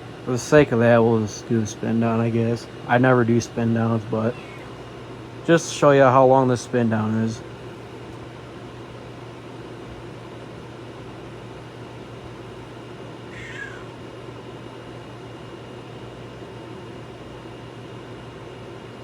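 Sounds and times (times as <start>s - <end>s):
fan motor spinning down: 0.0s - 19.0s
cat meowing: 13.4s - 13.9s.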